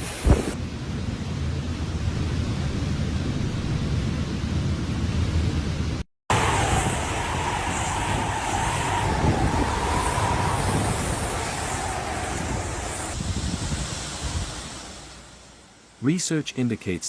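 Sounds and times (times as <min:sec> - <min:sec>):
strong wind rushing: 0:05.0 - 0:15.0.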